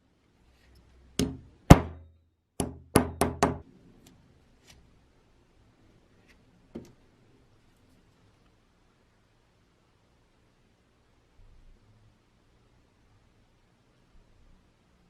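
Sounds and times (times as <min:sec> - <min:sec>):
sharp knocks on hard object: 0:01.2 - 0:02.0, 0:02.6 - 0:03.6.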